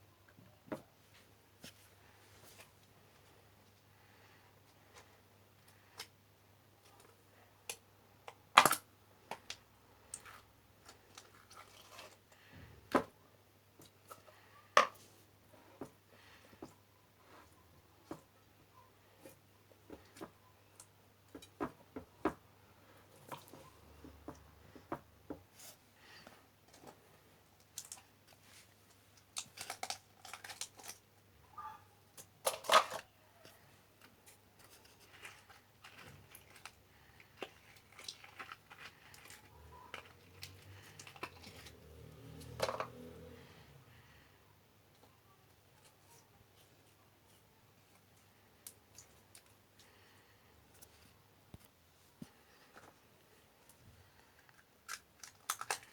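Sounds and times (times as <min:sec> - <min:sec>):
slime squishing and crackling: 0:34.6 - 0:41.7.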